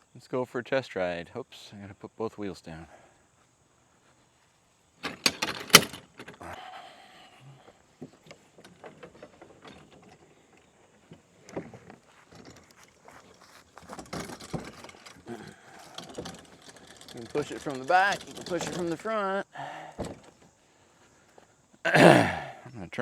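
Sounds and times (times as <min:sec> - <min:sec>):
kayak wheels clacking: 0:05.0 - 0:06.6, 0:08.0 - 0:20.6
kayak rolling on wheels: 0:07.8 - 0:19.4.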